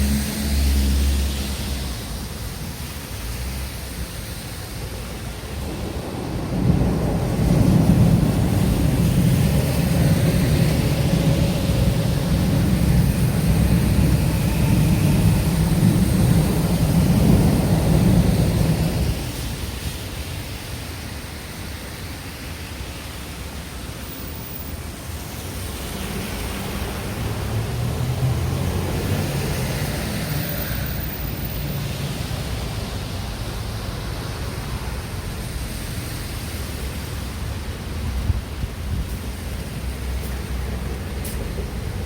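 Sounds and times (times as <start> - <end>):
vehicle passing: 0.0 - 2.3, 25.6 - 34.7
road traffic rumble: 0.0 - 42.0.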